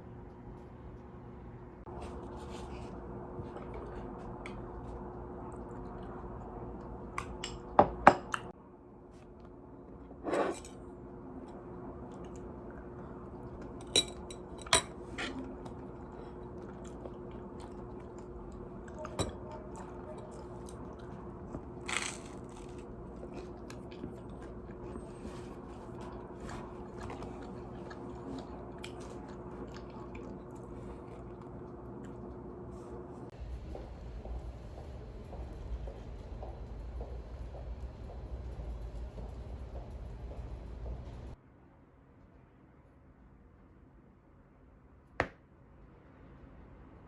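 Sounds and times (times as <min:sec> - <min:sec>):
steady low hum: 0:00.0 - 0:41.5
dishes and cutlery clinking: 0:10.3 - 0:10.8, 0:13.8 - 0:15.5, 0:18.9 - 0:19.8.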